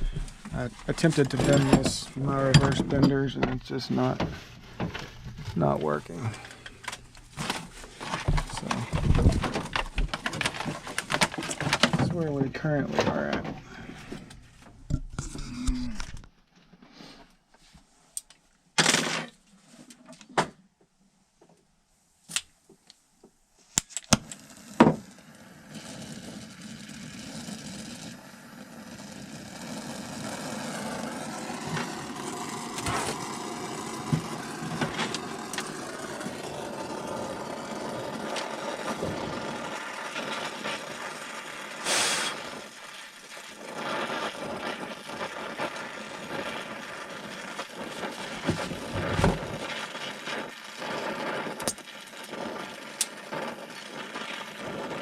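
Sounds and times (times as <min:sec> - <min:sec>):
small power tool motor humming: 0:24.4 - 0:39.6.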